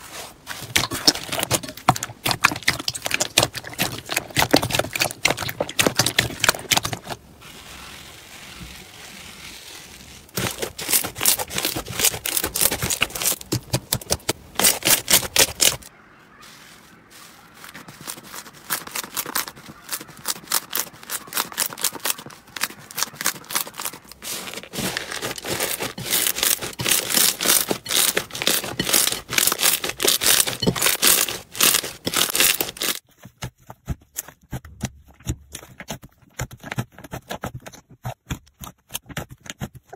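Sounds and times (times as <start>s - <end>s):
slime crackling and popping: 0.8s - 15.8s, 18.2s - 33.0s.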